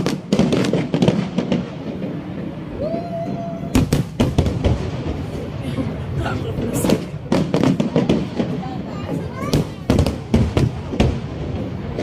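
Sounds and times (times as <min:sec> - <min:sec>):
fireworks loud bangs: 0:00.0 - 0:02.8, 0:03.4 - 0:12.0
fireworks crackling: 0:00.0 - 0:12.0.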